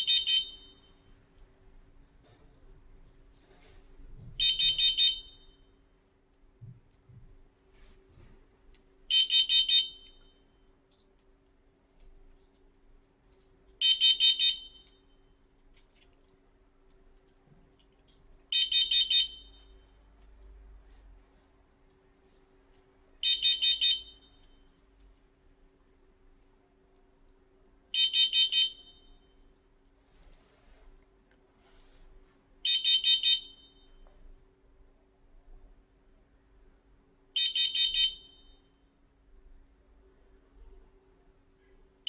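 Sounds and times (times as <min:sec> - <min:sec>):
carbon monoxide alarm beeping: 0:00.0 - 0:01.2, 0:04.2 - 0:05.8, 0:09.1 - 0:10.6, 0:13.8 - 0:15.4, 0:18.5 - 0:20.1, 0:23.2 - 0:24.8, 0:27.9 - 0:29.5, 0:32.6 - 0:34.1, 0:37.4 - 0:38.9.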